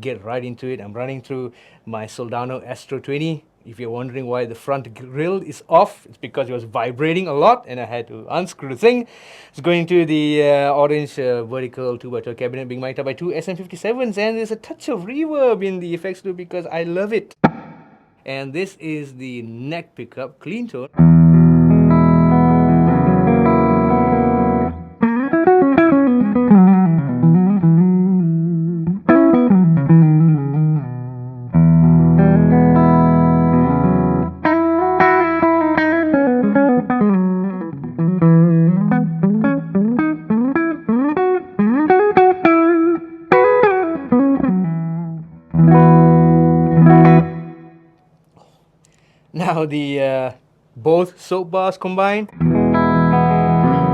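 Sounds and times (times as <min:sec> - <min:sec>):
clean electric guitar playing: 0:21.0 - 0:48.0, 0:52.4 - 0:53.9.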